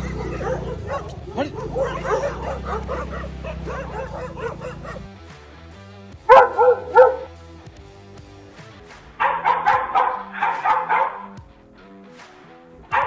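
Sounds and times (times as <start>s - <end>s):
dog barking: 0.0s - 5.1s, 6.3s - 7.3s, 9.2s - 11.4s
background music: 0.0s - 13.0s.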